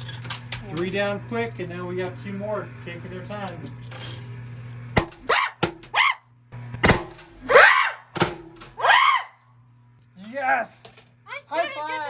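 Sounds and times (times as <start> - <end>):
excited shrieks: 5.2 - 6.3, 7.5 - 8.1, 8.8 - 9.5.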